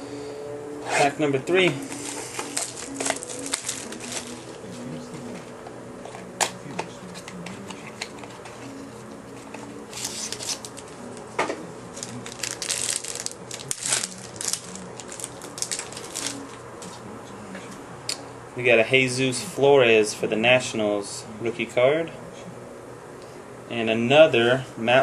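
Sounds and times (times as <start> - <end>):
wrapper crinkling and tearing: 1.8 - 4.6, 9.9 - 11.3, 11.9 - 16.6.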